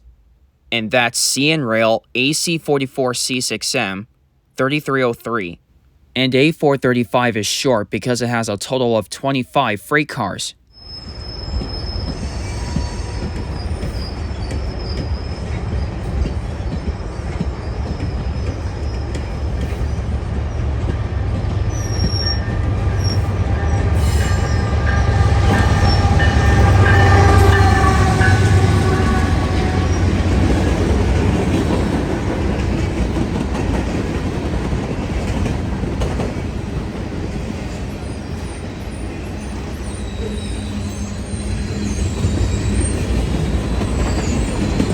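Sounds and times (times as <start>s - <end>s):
wheels squealing on rails: 10.7s - 34.5s, 37.3s - 44.9s
freight train rumbling past: 10.8s - 44.9s.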